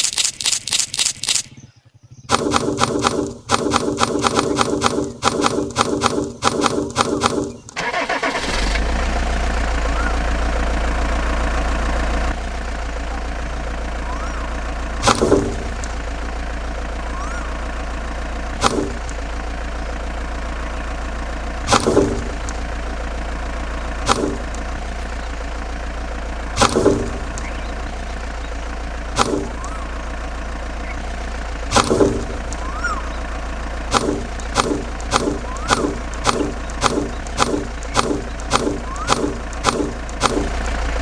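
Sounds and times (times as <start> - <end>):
small motor humming: 0.0 - 41.0
sharp knocks: 2.3 - 7.6, 15.0 - 15.9, 18.6 - 19.1, 21.6 - 22.7, 24.1 - 25.3, 26.6 - 27.4, 29.2 - 29.7, 31.7 - 32.6, 33.9 - 40.6.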